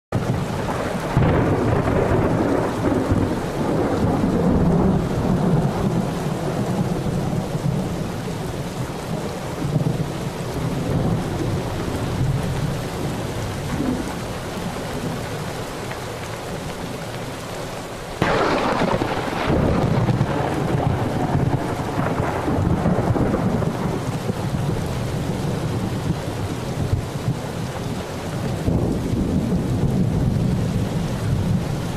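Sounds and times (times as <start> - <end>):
steady rain: 0.1 - 31.9
roll of thunder: 0.2 - 8.2, 13.4 - 14.4, 18.2 - 27.4, 28.6 - 31.7.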